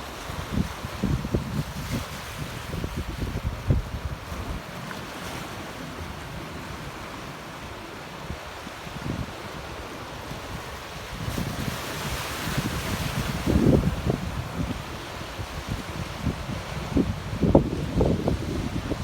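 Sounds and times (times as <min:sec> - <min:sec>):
wind buffeting microphone: 0:00.3 - 0:04.7, 0:10.5 - 0:19.0.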